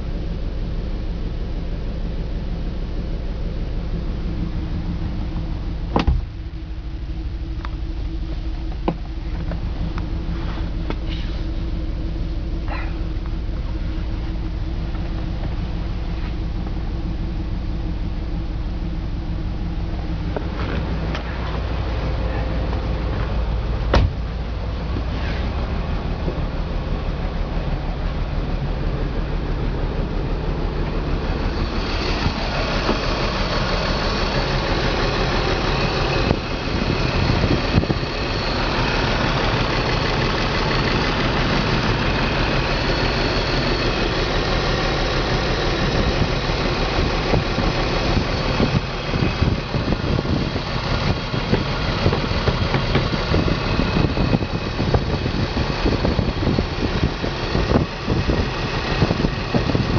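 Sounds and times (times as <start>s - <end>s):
car engine idling roughly: 0.0s - 59.9s.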